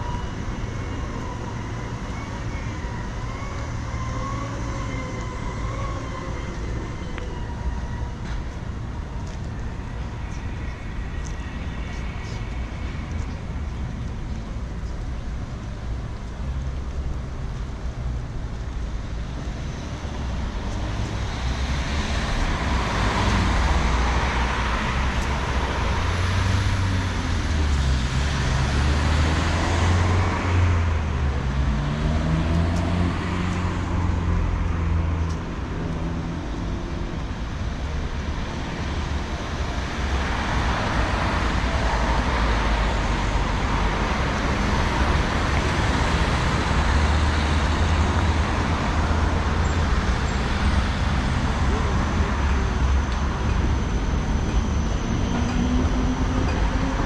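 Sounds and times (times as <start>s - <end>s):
cars passing close by: 19.2s - 57.0s.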